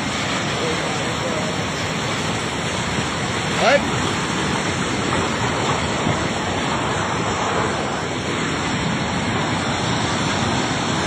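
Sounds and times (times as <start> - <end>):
floodwater rushing: 0.0 - 11.0.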